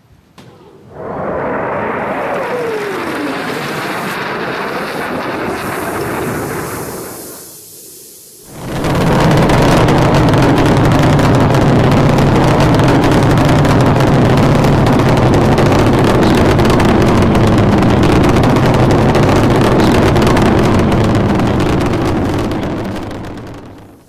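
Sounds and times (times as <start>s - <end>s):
loud engine roar: 1.0s - 7.4s, 8.5s - 23.7s.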